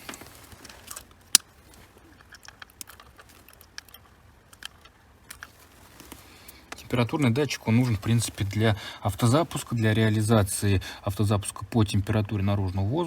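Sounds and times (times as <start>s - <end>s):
small clicks: 0.0s - 6.8s.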